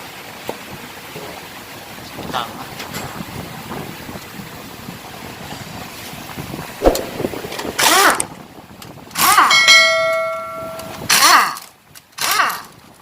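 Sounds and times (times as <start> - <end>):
sharp knock: 6.8 - 7.5
metal part ringing: 9.5 - 11.1.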